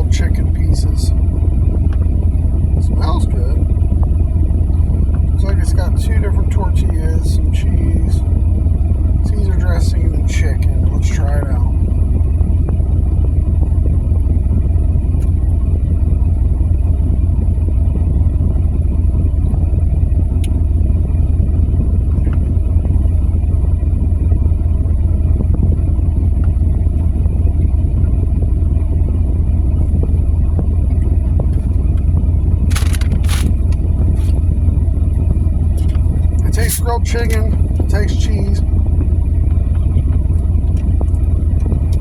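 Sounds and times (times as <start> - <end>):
loud low rumble: 0.0 - 42.0
short crackling noises: 32.6 - 34.5.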